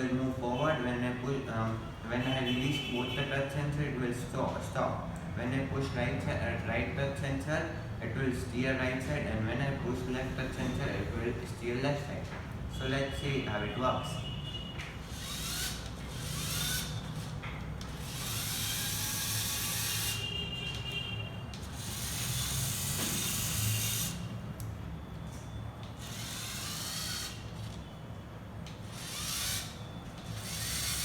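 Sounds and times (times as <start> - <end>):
toy car electric motors whirring: 15.0 - 17.3, 17.9 - 20.2, 21.6 - 24.3, 25.9 - 27.8, 28.7 - 31.0.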